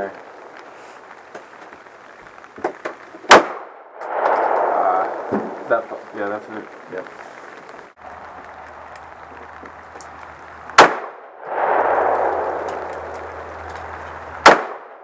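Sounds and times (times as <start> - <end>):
pistol shots: 3.3 - 4.6, 10.8 - 15.0
rushing noise: 3.9 - 14.5.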